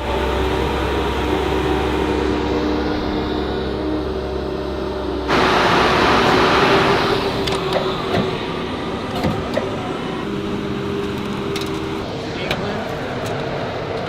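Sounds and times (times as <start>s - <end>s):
heavy vehicle engine running: 0.0s - 14.0s
loud rushing hiss: 5.3s - 9.1s.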